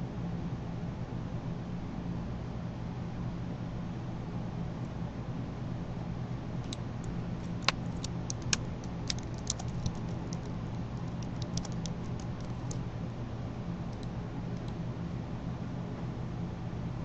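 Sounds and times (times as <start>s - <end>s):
steady low hum: 0.0s - 17.0s
plastic keys and buttons clicking: 7.4s - 12.8s.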